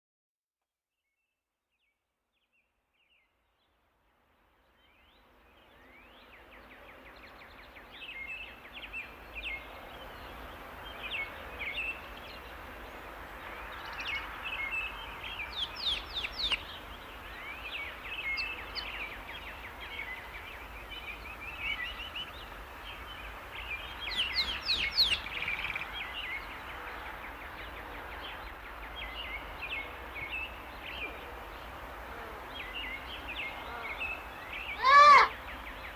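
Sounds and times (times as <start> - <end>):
rainforest ambience: 3.3 - 35.9
birds chirping and calling: 23.8 - 26.5, 32.6 - 35.9
quick sweeping bird calls: 34.7 - 35.4.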